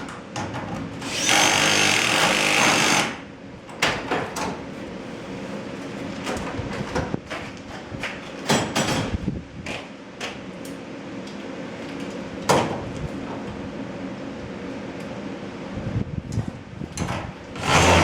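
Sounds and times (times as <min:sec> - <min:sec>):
knocks and clanks of installation work: 0:00.0 - 0:04.8, 0:06.1 - 0:13.6, 0:16.3 - 0:18.0.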